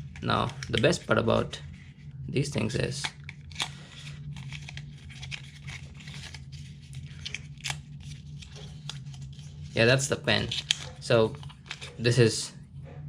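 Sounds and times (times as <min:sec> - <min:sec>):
packaging rustling and tearing: 0:02.9 - 0:12.0.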